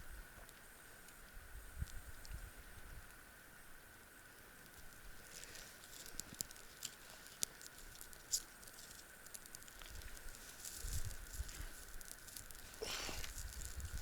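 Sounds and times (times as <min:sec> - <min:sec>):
rustling of sticks: 0:04.6 - 0:14.0
twigs snapping: 0:04.7 - 0:14.0.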